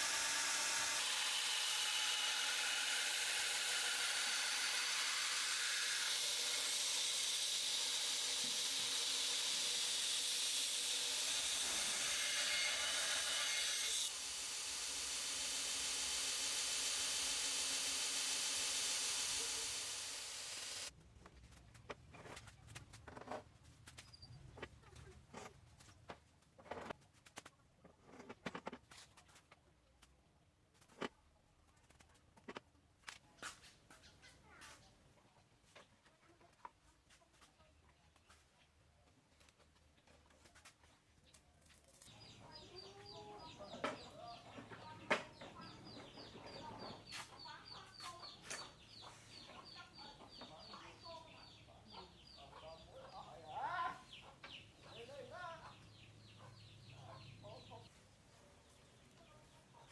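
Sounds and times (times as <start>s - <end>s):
chickens clucking: 42.2s - 55.1s.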